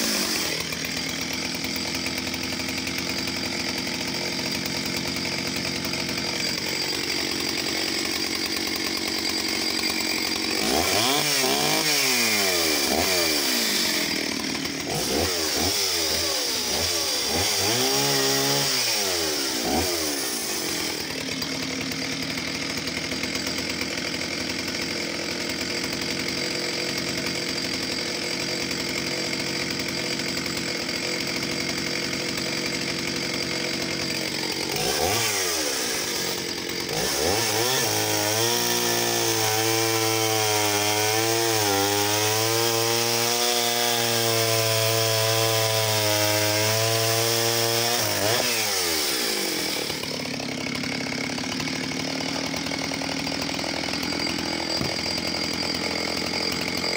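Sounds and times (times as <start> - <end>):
chainsaw engine revving: 0.0 - 56.9.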